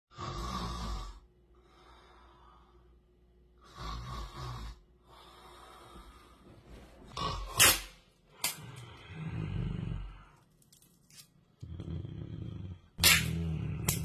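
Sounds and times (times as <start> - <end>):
person snoring: 0.1 - 2.8, 3.6 - 6.1, 7.1 - 7.6, 8.5 - 10.4, 11.6 - 14.0
quiet breathing: 0.9 - 7.5.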